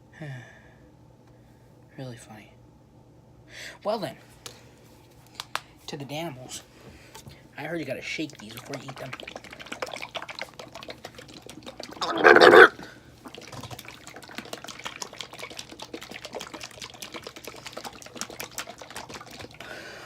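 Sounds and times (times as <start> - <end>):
liquid sloshing in plastic bottle: 8.1 - 19.6.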